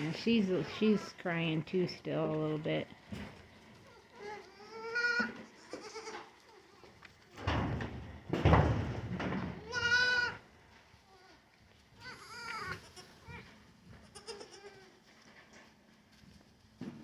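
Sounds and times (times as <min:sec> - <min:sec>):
young goats bleating: 0:00.6 - 0:01.5, 0:03.8 - 0:07.0, 0:09.6 - 0:15.1.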